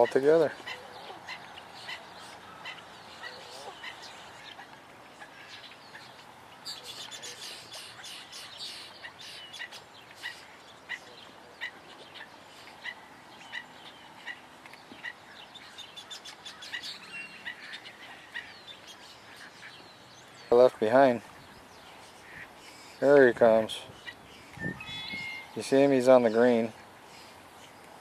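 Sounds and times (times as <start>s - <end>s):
birds chirping: 0.0s - 28.0s.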